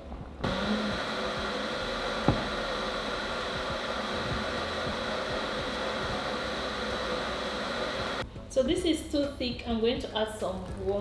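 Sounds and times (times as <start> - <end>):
extractor fan running: 0.4 - 8.3
single knock: 2.3 - 2.5.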